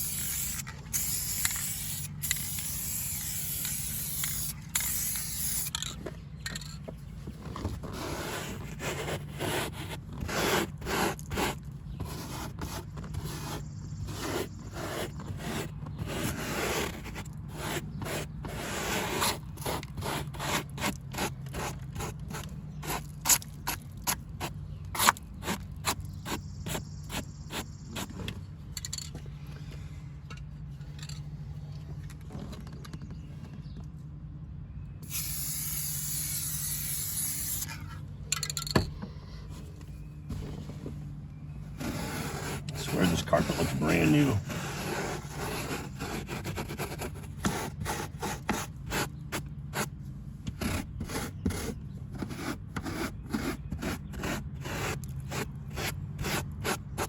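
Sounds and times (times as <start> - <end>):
aerosol can spraying: 0.0 - 5.8, 35.0 - 37.7.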